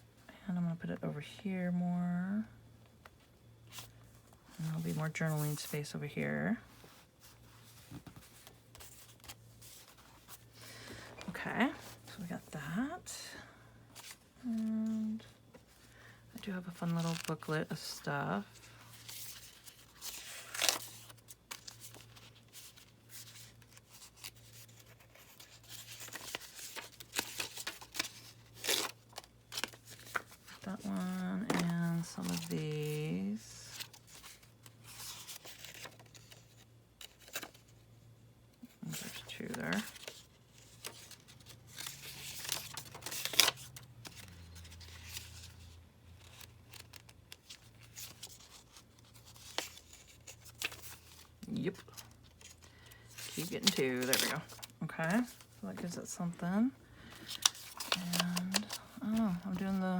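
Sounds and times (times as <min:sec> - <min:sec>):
paper rustling: 0:14.0 - 0:37.7, 0:38.8 - 0:56.4, 0:57.0 - 0:59.9.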